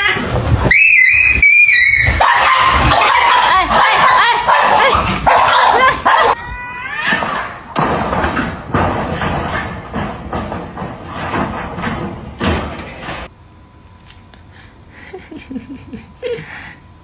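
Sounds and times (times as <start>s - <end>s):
dog yipping and whining: 0.4s - 3.5s.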